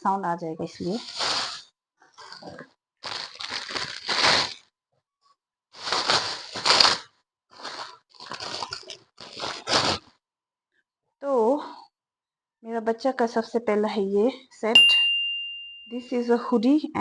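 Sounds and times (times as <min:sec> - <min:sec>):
plastic packets crinkling: 0:00.9 - 0:01.6, 0:02.2 - 0:04.7, 0:05.8 - 0:10.1.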